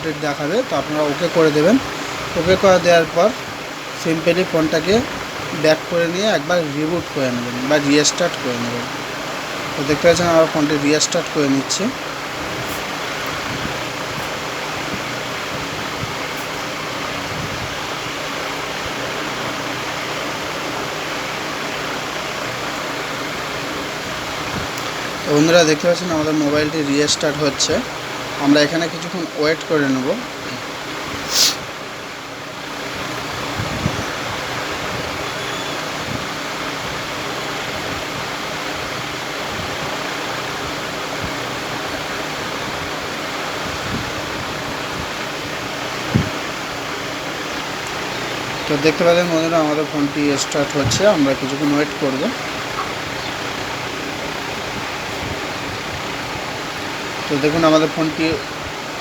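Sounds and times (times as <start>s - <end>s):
steady rushing noise: 35.9s - 59.0s.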